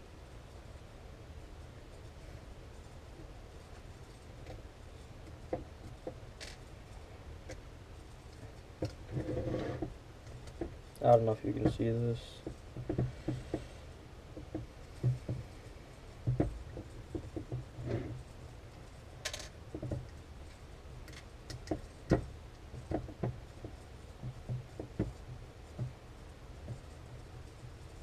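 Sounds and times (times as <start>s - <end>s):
light clicks and taps of handling parts: 9.8s - 13.7s, 14.3s - 26.0s.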